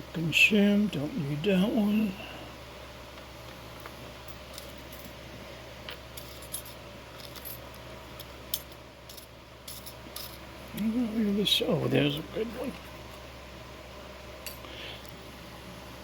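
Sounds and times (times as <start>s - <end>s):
small metal tools clinking: 3.8s - 5.2s, 5.9s - 10.4s.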